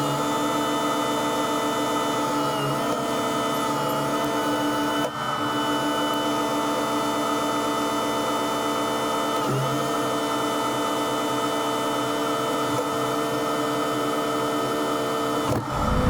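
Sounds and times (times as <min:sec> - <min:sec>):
grain machinery whining: 0:15.6 - 0:16.0.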